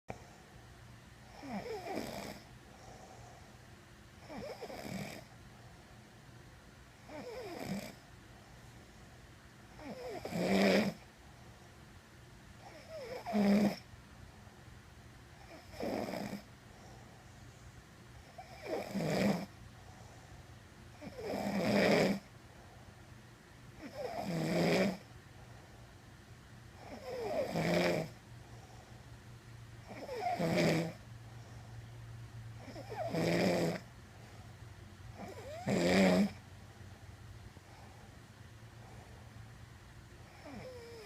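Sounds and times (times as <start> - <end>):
woman snoring: 1.3 - 2.5, 4.2 - 5.3, 7.0 - 8.0, 9.7 - 11.0, 12.6 - 13.8, 15.4 - 16.5, 18.3 - 19.5, 21.0 - 22.3, 23.8 - 25.0, 26.8 - 28.2, 29.8 - 31.0, 32.6 - 33.9, 35.1 - 36.4, 40.3 - 41.0.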